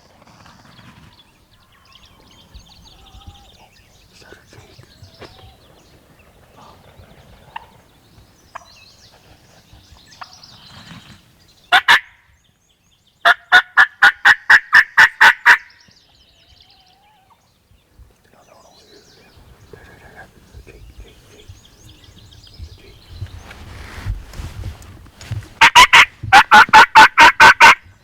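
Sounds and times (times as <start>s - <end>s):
turkey calling: 25.2s - 27.8s.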